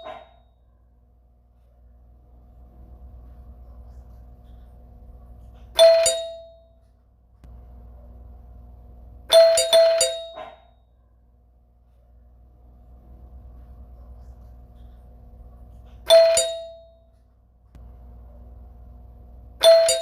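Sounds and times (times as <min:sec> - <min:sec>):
faint steady hum: 0:00.0 - 0:20.0
doorbell chiming: 0:05.8 - 0:06.8, 0:09.3 - 0:10.7, 0:16.1 - 0:17.1, 0:19.6 - 0:20.0.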